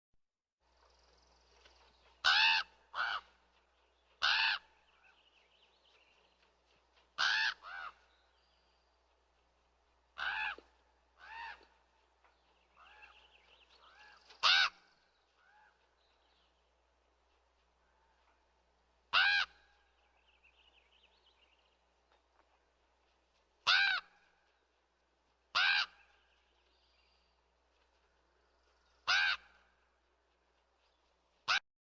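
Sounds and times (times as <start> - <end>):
raven calling: 2.2 - 3.4, 4.2 - 5.2, 7.2 - 8.2, 10.1 - 11.9, 12.8 - 15.9, 19.1 - 20.0, 23.6 - 24.4, 25.5 - 26.4, 29.0 - 29.8.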